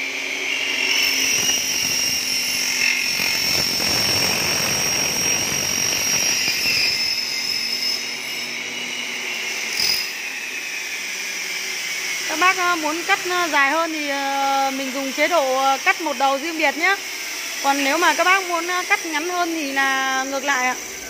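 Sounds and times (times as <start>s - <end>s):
cutting saw high whine: 0.0s - 21.0s.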